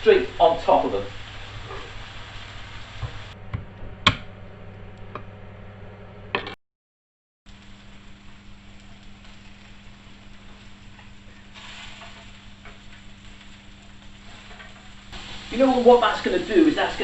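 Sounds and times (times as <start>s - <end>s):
steady low hum: 0.1s - 6.4s.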